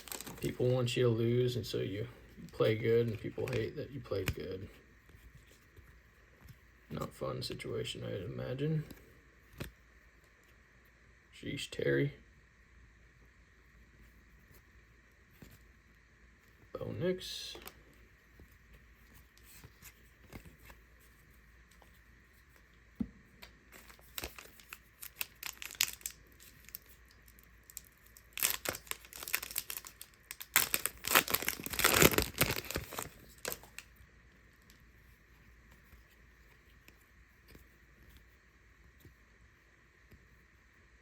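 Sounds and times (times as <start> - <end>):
packaging tearing and crinkling: 0.0 - 0.6, 23.7 - 33.9.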